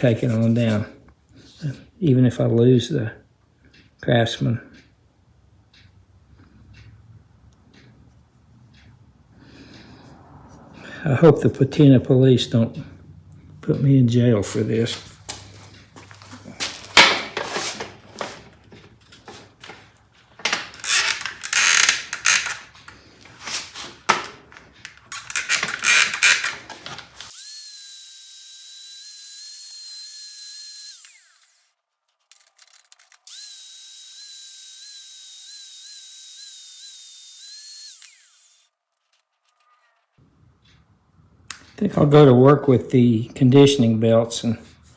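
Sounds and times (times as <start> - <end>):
power tool grinding metal: 25.1 - 31.7, 33.2 - 38.7.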